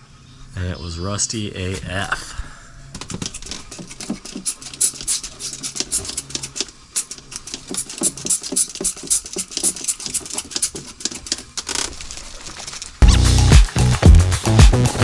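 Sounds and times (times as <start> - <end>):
brush scrubbing metal: 3.4 - 11.6.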